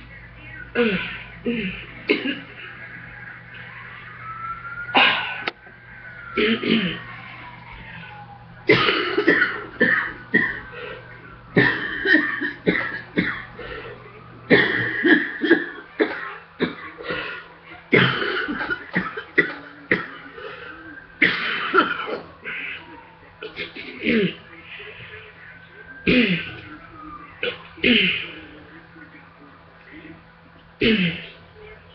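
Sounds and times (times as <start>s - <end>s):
person coughing: 0.8s - 2.8s, 5.0s - 5.5s, 6.4s - 7.1s, 8.7s - 25.0s, 26.0s - 26.7s, 27.4s - 28.5s, 30.8s - 31.4s.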